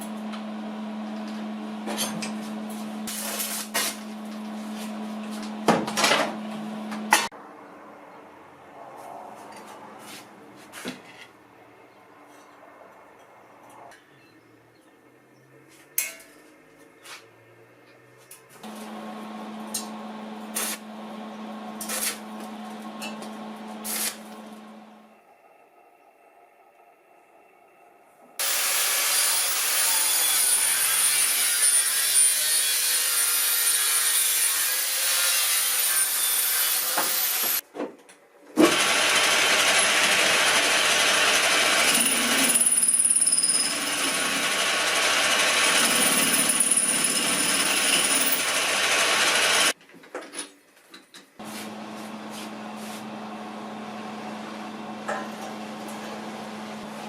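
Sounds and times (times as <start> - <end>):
loud motor-driven machine running: 18.6 - 25.0, 38.7 - 42.6, 43.6 - 49.8, 51.4 - 57.0.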